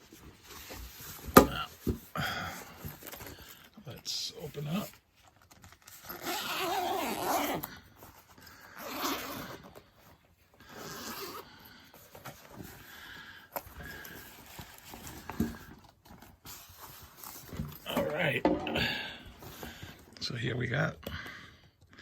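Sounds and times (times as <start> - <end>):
zipper rasping open: 5.8 - 12.5.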